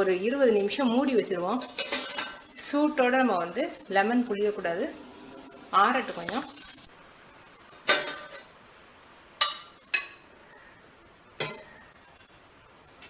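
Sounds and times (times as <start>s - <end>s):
kitchen utensils clinking: 1.4s - 2.5s, 7.7s - 8.5s, 11.4s - 12.0s.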